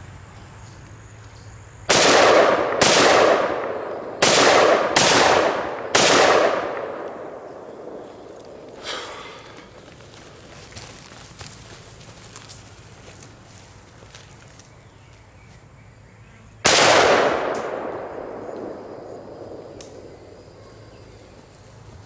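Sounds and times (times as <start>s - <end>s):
gunshots with echoing tail: 1.9s - 9.0s, 16.7s - 20.6s.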